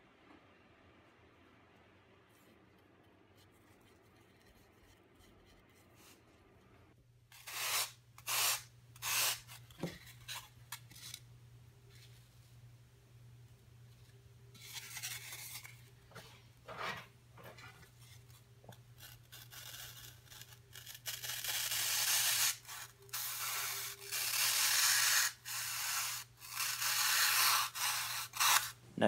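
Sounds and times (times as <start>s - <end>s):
hand tool rasping foam: 19.0s - 28.8s.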